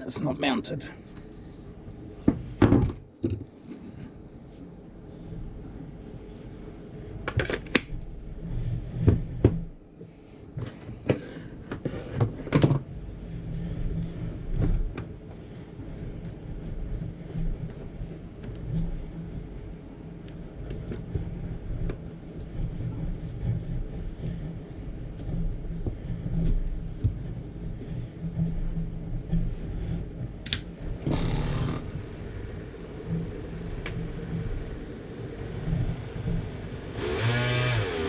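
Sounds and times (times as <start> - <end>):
rotary tool motor hum: 30.8 - 34.9, 36.4 - 38.0.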